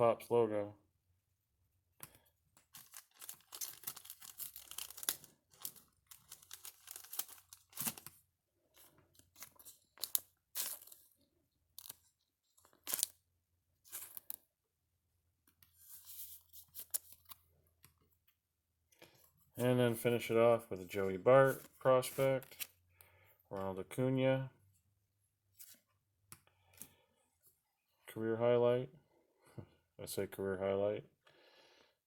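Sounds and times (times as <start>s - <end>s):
wrapper tearing and crinkling: 2.7s - 8.1s, 12.8s - 13.2s.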